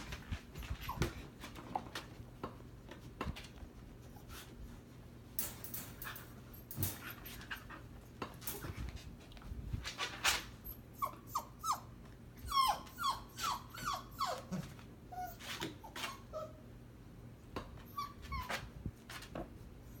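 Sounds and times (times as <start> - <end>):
puppy yelps: 10.6 - 16.6, 17.9 - 18.7.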